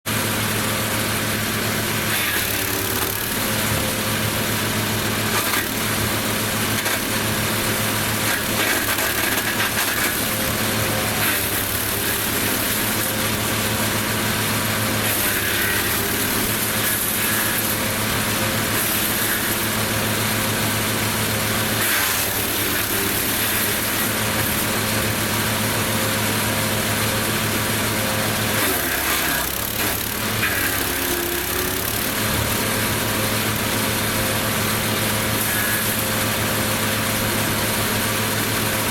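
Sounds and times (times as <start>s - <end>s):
wood chipper engine running: 0.1s - 38.9s
branches cracking in cutter: 5.3s - 5.9s, 6.7s - 7.2s, 8.2s - 10.4s, 11.2s - 13.2s, 15.0s - 17.8s, 21.8s - 24.7s, 28.6s - 32.2s.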